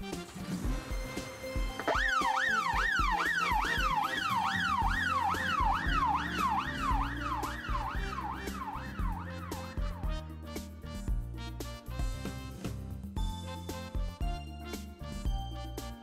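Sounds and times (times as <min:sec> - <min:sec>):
backing music: 0:00.0 - 0:16.0
siren in fast yelp: 0:01.8 - 0:09.8.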